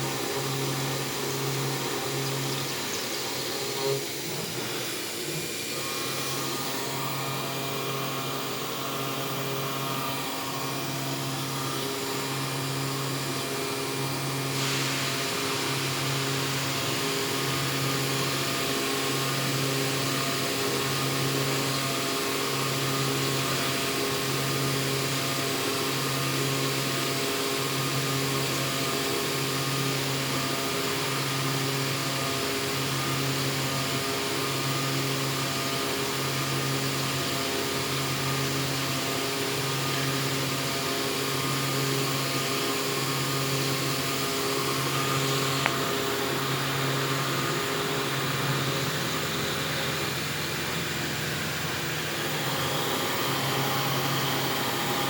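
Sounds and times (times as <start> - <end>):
cnc machine cycling hum: 0.0 - 55.0
broad hiss: 14.4 - 20.5.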